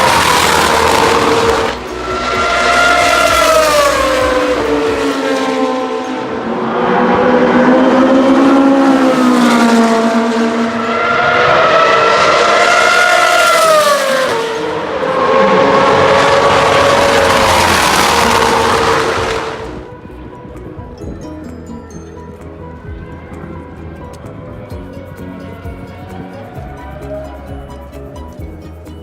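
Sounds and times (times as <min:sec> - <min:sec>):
race car engine revving: 0:00.0 - 0:20.3.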